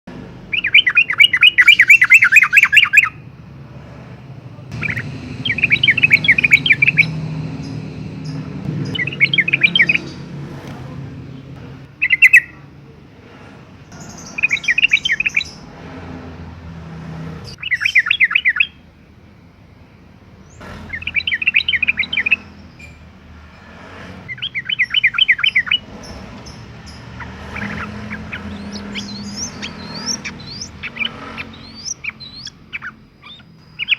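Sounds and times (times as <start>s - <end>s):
bulbul chattering song: 0.4s - 3.5s, 4.7s - 10.5s, 11.2s - 12.8s, 13.9s - 15.7s, 17.5s - 19.0s, 20.4s - 23.0s, 24.3s - 33.9s.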